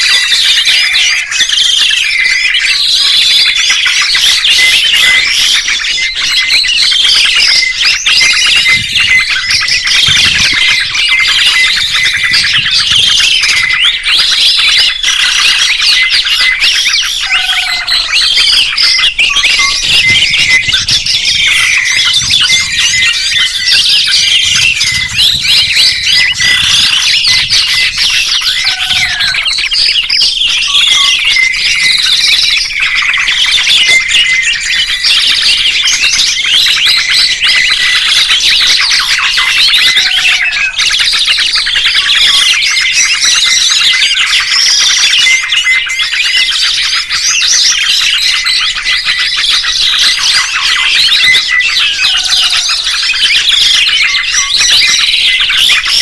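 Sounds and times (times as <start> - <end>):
low bird call: 0.0 - 56.0
songbirds chirping and twittering: 0.0 - 56.0.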